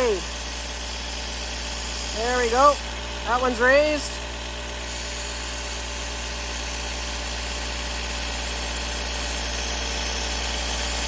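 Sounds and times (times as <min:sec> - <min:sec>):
grinder motor humming: 0:00.0 - 0:11.0
steel blade grinding hiss: 0:00.0 - 0:11.0.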